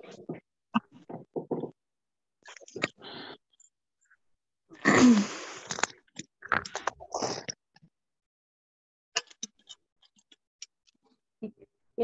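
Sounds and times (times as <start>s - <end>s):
person breathing out loudly: 4.9s - 5.8s.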